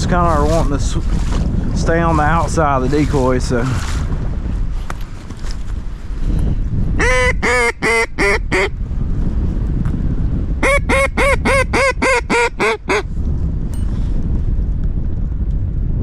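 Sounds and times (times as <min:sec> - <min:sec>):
wind noise on microphone: 0:00.0 - 0:16.0
duck quacking: 0:07.0 - 0:08.7, 0:10.6 - 0:13.0.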